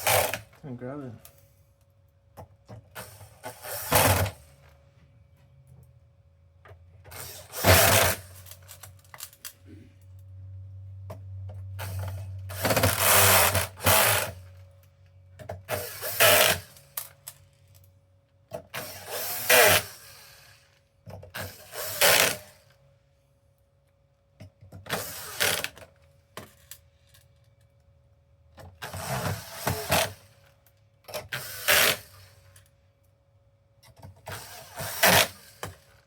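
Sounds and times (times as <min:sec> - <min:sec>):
electric drill driving screws: 0:00.0 - 0:00.5, 0:03.0 - 0:04.4, 0:07.1 - 0:08.8, 0:11.8 - 0:14.4, 0:15.7 - 0:17.1, 0:18.7 - 0:20.7, 0:21.4 - 0:22.6, 0:24.9 - 0:25.8, 0:28.8 - 0:30.4, 0:31.1 - 0:32.4, 0:34.2 - 0:35.8.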